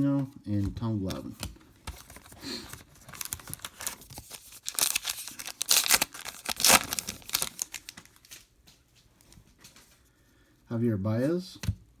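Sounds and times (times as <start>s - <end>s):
card pack wrapper tearing and crinkling: 2.0s - 8.4s.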